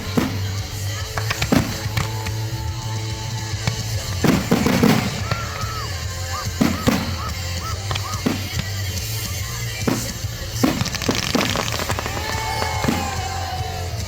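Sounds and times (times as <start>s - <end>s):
fireworks banging: 0.0s - 14.0s
music with deep bass: 0.0s - 14.0s.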